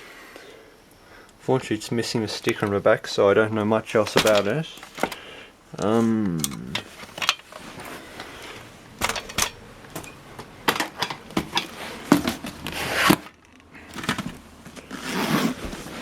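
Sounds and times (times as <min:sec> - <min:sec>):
scraping rustle: 0:03.9 - 0:16.0.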